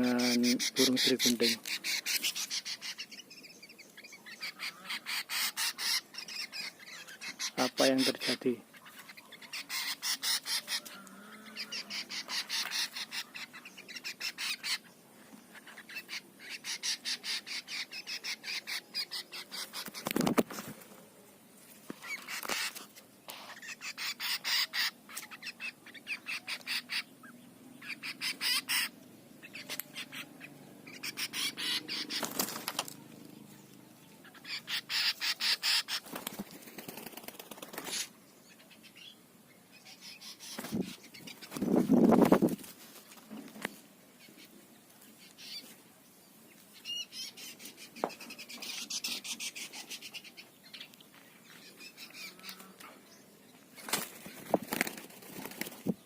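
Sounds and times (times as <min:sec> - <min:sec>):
rapid wing-flapping: 0:19.6 - 0:21.0, 0:31.9 - 0:33.0, 0:35.8 - 0:38.1, 0:40.4 - 0:43.7, 0:53.8 - 0:56.0.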